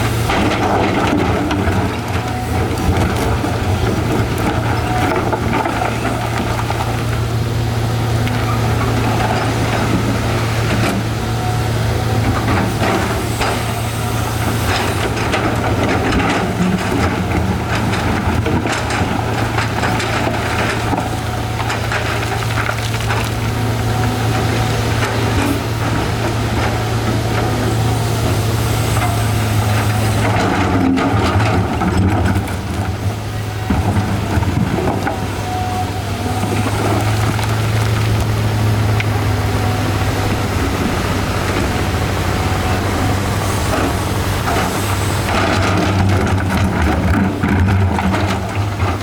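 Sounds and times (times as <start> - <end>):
excavator diesel engine running: 0.0 - 49.0
rocks knocking and scraping: 14.5 - 27.5.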